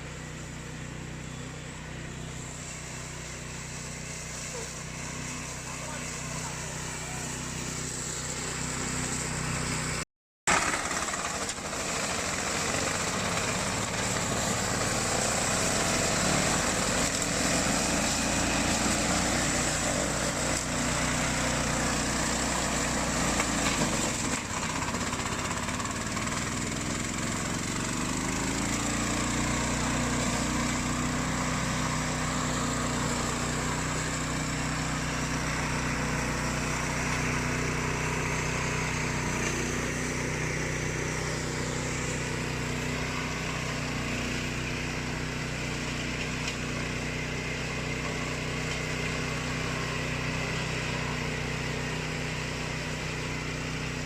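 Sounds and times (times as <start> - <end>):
mower engine running: 0.0 - 54.0
hiss of cutting: 2.3 - 9.4.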